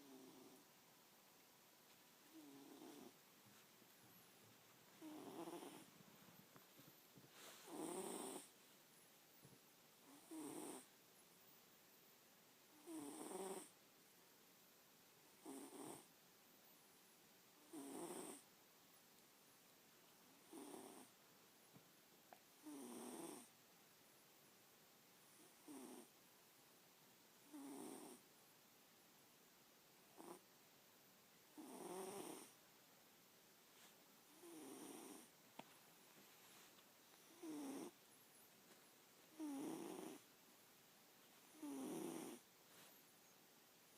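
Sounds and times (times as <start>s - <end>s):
cat snoring faintly: 0.0s - 0.7s, 2.3s - 3.3s, 5.0s - 6.6s, 7.2s - 8.6s, 10.0s - 10.9s, 12.7s - 13.8s, 15.4s - 16.1s, 17.6s - 18.5s, 20.2s - 21.2s, 22.4s - 23.6s, 25.2s - 26.2s, 27.4s - 28.3s, 30.0s - 30.5s, 31.4s - 32.6s, 33.8s - 35.4s, 36.5s - 38.5s, 39.3s - 40.3s, 41.3s - 43.0s.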